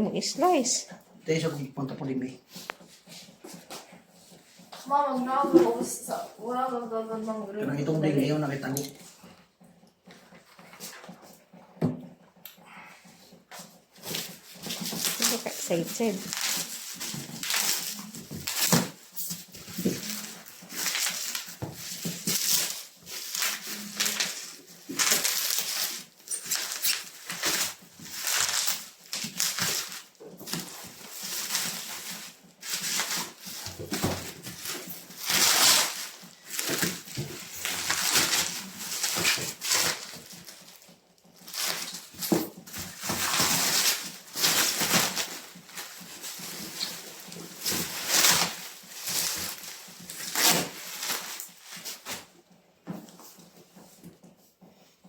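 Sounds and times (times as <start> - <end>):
packaging rustling and tearing: 13.6 - 54.1.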